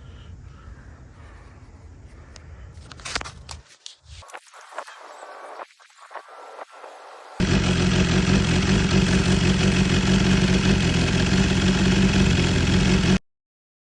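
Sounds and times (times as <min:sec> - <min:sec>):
motorcycle engine idling: 0:07.4 - 0:13.2.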